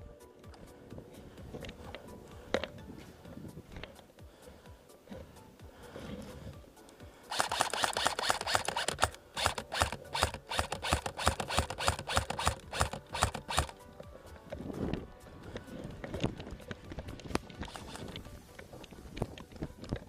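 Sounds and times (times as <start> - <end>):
sharp rapid clicks: 7.3 - 13.8, 17.7 - 18.2.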